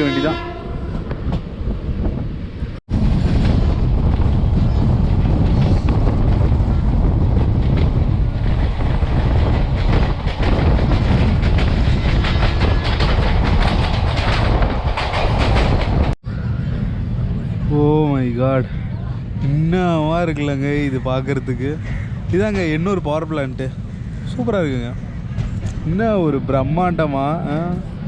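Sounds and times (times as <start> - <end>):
train wheels rumbling: 0.0 - 28.0
train coach clattering and rattling: 3.0 - 16.2, 21.6 - 26.3.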